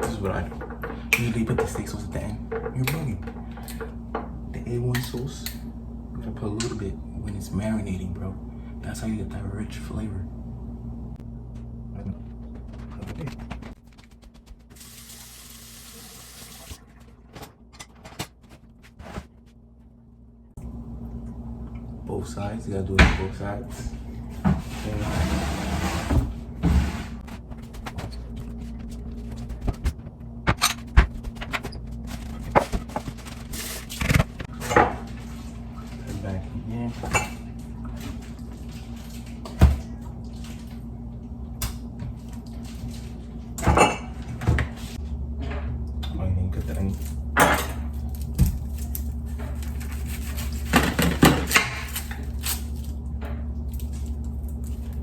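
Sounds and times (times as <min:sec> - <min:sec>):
low hum: 0:00.0 - 0:55.0
kitchen items knocking and clicking: 0:50.6 - 0:52.2.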